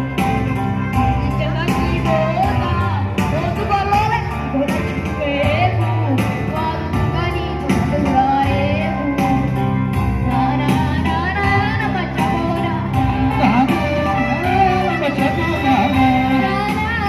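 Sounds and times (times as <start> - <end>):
instrumental backing with bass: 0.0 - 17.0
high voice singing: 10.2 - 17.0.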